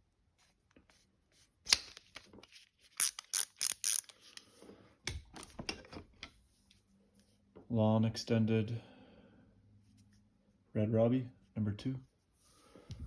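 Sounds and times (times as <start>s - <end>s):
screwdriver ratchet clicking: 3.0s - 4.1s.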